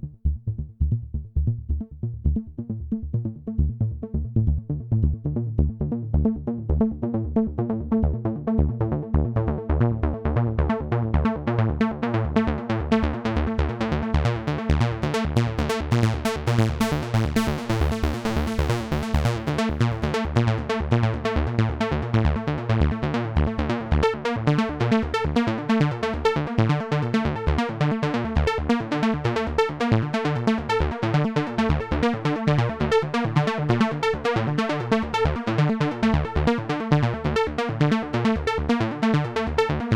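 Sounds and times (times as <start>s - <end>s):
fast repeating low synth pulse: 0.0s - 25.2s.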